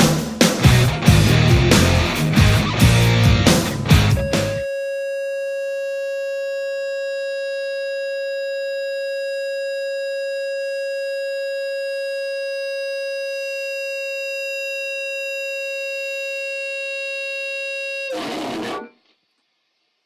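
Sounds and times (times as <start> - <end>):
steady pitched tone: 0.7 - 4.9.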